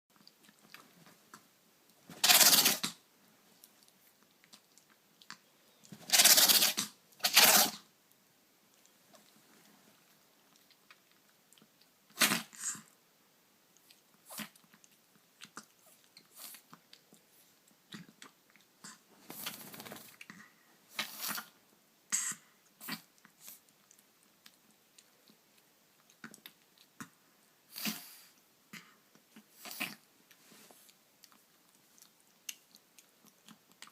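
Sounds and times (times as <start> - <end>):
dog sneezing: 12.2 - 12.8.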